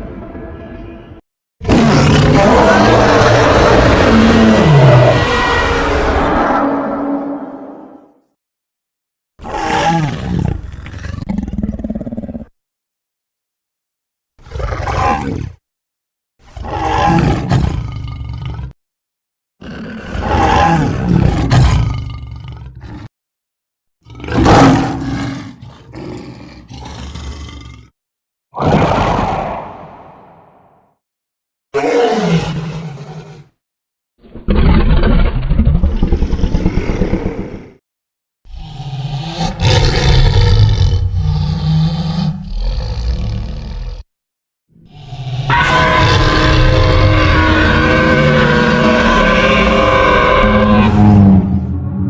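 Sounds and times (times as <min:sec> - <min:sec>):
dinosaur roar: 0:00.0 - 0:08.2, 0:19.6 - 0:23.1, 0:24.0 - 0:27.9, 0:28.6 - 0:30.7, 0:34.2 - 0:37.8, 0:38.5 - 0:44.1, 0:44.8 - 0:52.0.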